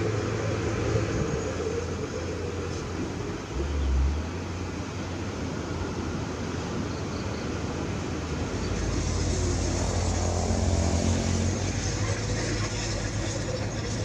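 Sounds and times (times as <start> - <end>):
diesel engine running: 7.9 - 14.0.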